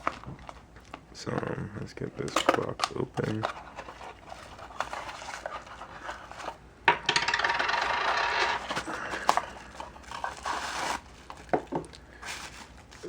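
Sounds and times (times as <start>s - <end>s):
packaging rustling: 2.1s - 6.6s, 8.6s - 13.0s.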